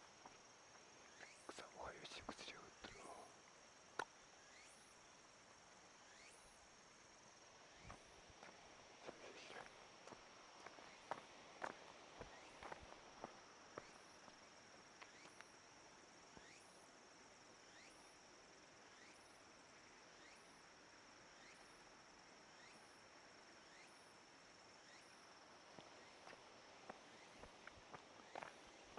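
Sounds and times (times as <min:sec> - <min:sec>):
insect high-pitched trill: 0:01.0 - 0:08.1, 0:13.8 - 0:25.4
insect rising call: 0:01.0 - 0:15.6, 0:16.3 - 0:19.5, 0:20.1 - 0:20.7, 0:21.3 - 0:28.9
light footsteps: 0:07.8 - 0:14.4, 0:25.7 - 0:28.9.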